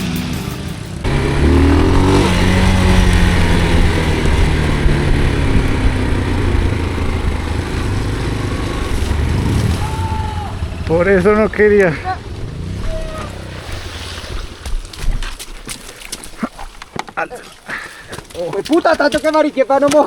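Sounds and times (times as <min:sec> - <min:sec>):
motorcycle engine revving: 0:00.0 - 0:14.8.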